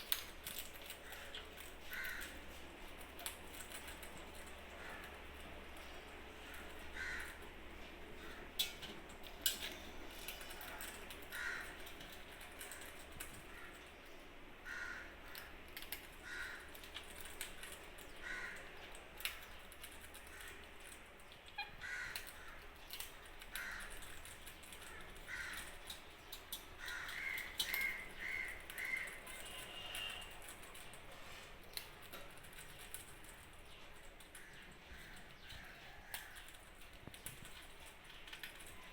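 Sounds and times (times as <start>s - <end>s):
birds squawking: 0.9s - 2.5s, 4.7s - 7.6s, 11.3s - 12.0s, 14.6s - 15.5s, 16.2s - 16.9s, 21.4s - 30.5s.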